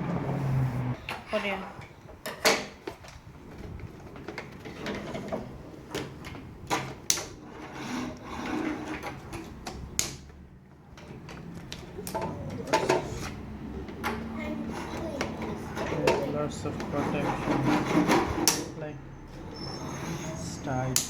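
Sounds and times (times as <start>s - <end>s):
plastic toy cars clicking and knocking: 2.2s - 7.4s, 8.1s - 18.7s.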